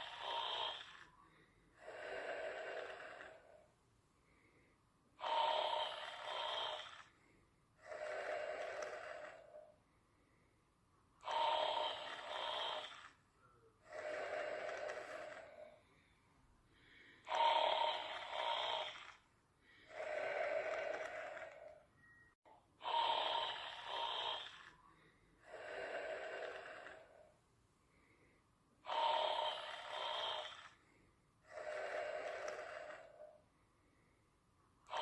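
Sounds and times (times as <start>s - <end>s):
person snoring: 0.0s - 3.7s, 5.2s - 9.7s, 11.2s - 16.1s, 16.8s - 21.8s, 22.8s - 27.3s, 28.8s - 33.4s.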